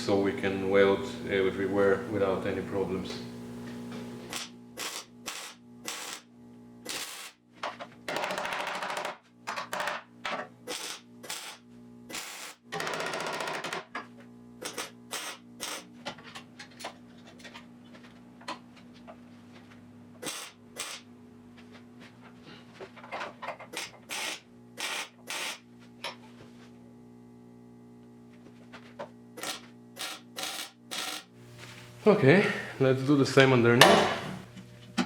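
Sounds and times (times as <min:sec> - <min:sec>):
steady low hum: 0:00.0 - 0:35.0
welding crackling bursts: 0:04.3 - 0:06.3, 0:06.9 - 0:07.4, 0:10.7 - 0:12.6, 0:14.6 - 0:15.9, 0:20.2 - 0:21.0, 0:23.8 - 0:25.6, 0:29.4 - 0:31.3.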